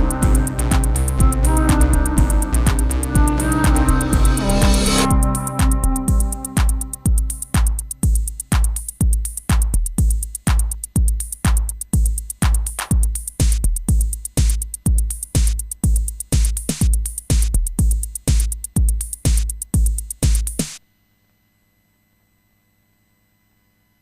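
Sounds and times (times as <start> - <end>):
synthesizer music: 0.0 - 8.0
bright hi-hats: 0.0 - 20.8
kick drum: 0.0 - 20.8.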